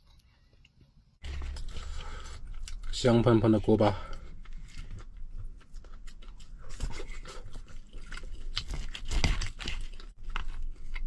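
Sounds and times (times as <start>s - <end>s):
person chewing crunchy food: 1.2s - 3.0s, 4.1s - 11.0s.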